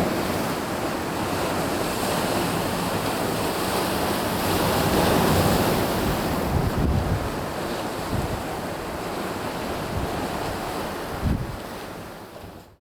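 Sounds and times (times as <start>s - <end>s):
surf washing against shore: 0.0s - 12.8s
wind thumping on microphone: 11.2s - 11.6s.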